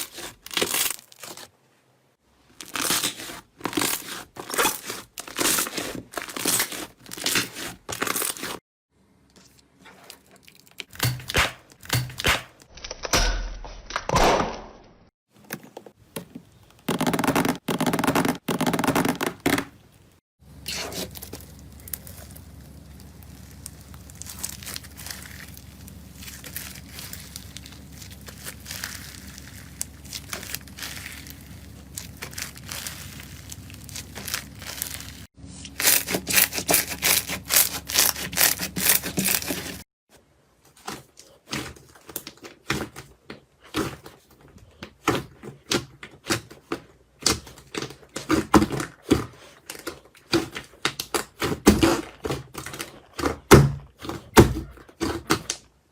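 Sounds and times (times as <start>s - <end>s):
steady low hum: 20.4s - 35.3s
slime crackling and popping: 20.7s - 39.5s.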